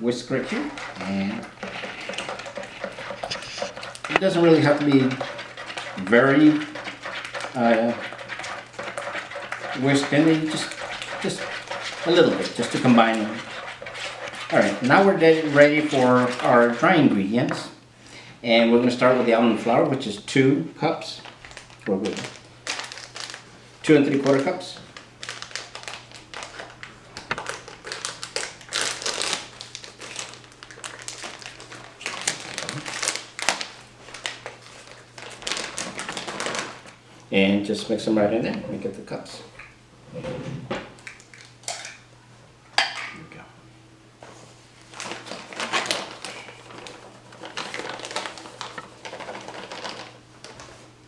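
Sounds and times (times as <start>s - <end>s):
measuring cup scraping and tapping: 0.4s - 16.6s
packaging crinkling: 21.2s - 37.0s, 44.8s - 50.9s.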